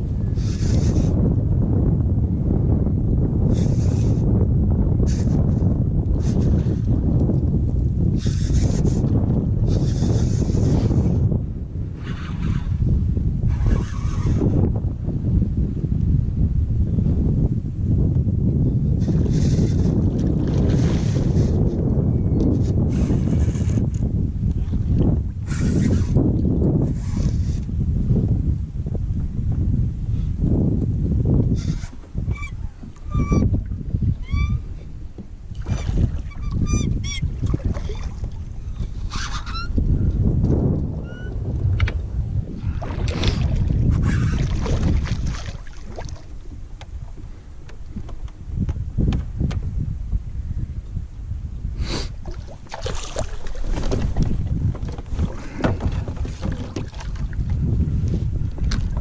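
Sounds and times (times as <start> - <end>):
wind buffeting microphone: 0.0 - 59.0
water splashing and sloshing: 19.7 - 21.4, 35.2 - 39.0, 42.6 - 48.4, 52.2 - 59.0.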